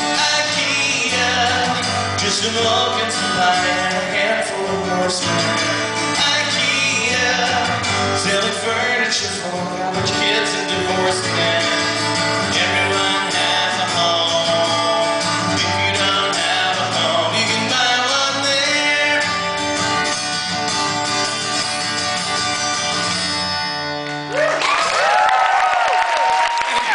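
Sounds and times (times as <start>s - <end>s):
live rock band with guitar: 0.0s - 26.2s
audience cheering and whistling: 24.3s - 26.9s.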